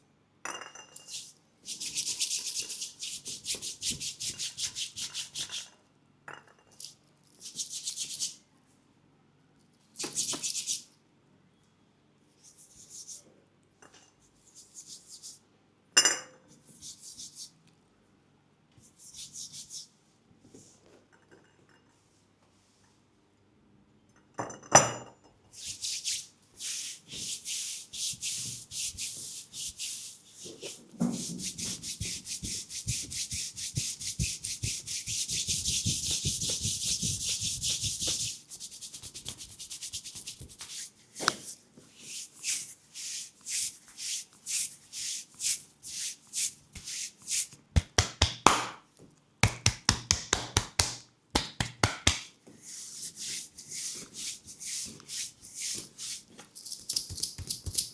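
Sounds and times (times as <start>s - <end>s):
hands rubbing skin: 1.1s - 5.7s, 7.4s - 8.4s, 10.0s - 10.8s, 14.5s - 15.4s, 16.7s - 17.5s, 18.8s - 19.9s, 25.6s - 48.8s, 49.4s - 57.9s.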